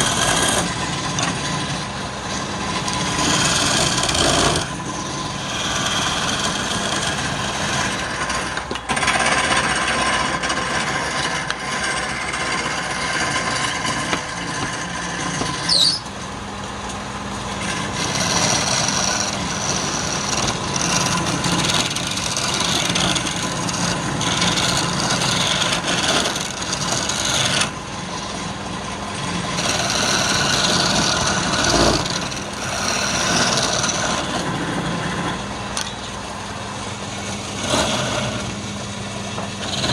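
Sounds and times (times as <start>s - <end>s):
turning tool cutting wood: 0.0s - 39.9s
wood lathe motor humming: 0.0s - 39.9s
high squeal: 15.5s - 16.1s.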